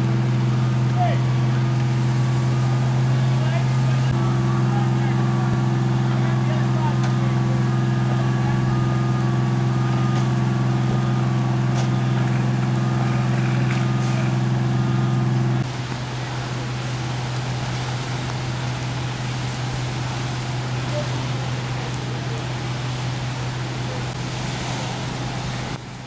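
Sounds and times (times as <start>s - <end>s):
heavy engine humming: 0.0s - 26.0s
steady rushing noise: 1.0s - 7.0s, 15.6s - 26.0s.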